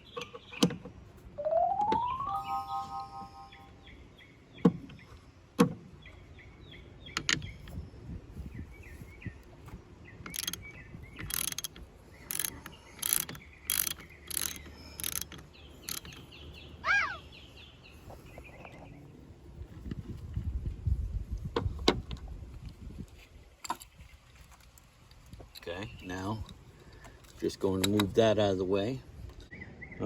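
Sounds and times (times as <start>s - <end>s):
wrench ratcheting: 10.3s - 10.6s, 11.2s - 16.2s.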